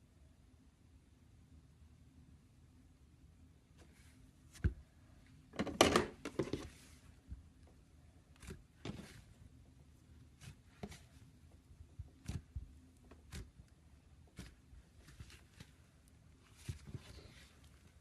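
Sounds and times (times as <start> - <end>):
slime squishing: 7.7 - 18.0.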